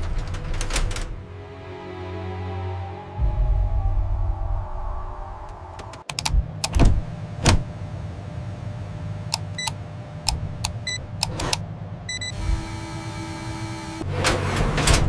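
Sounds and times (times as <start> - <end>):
music: 0.0 - 6.1
low steady hum: 3.2 - 14.1
sharp clicks and knocks: 5.8 - 7.6, 9.3 - 11.6.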